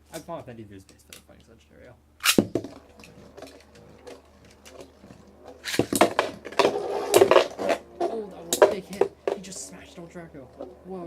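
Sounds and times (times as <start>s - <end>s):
spinning tops clashing and rattling: 2.2s - 7.4s.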